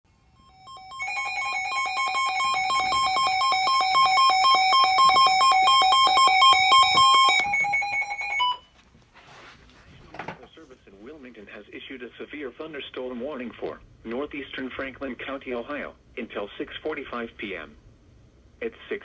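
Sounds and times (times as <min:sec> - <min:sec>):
alert radio electronic beeping: 0:00.5 - 0:08.6
short beep: 0:00.5 - 0:08.6.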